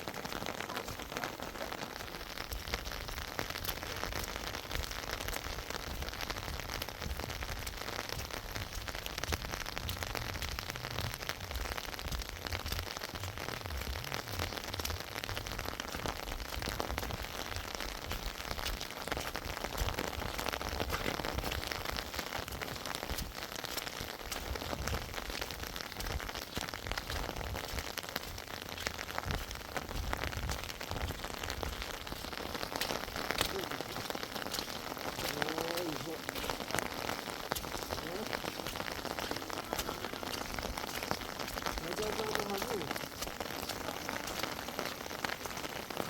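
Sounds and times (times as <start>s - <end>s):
steady rain falling: 0.0s - 46.0s.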